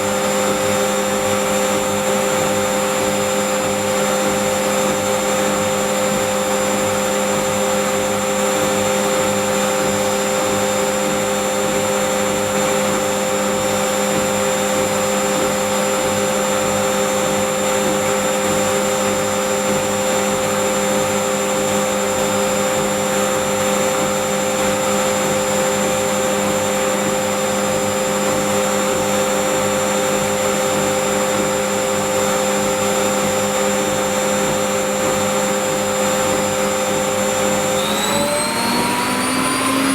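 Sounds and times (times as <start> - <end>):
washing machine spinning: 0.0 - 39.9.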